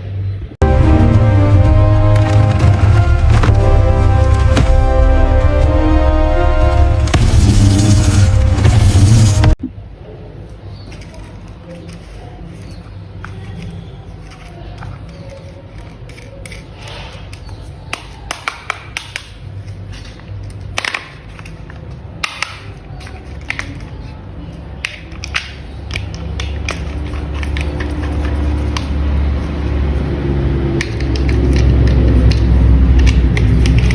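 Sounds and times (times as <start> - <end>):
low rumble: 0.6 - 9.6
plastic toy parts clicking: 10.9 - 30.1, 30.8 - 33.9.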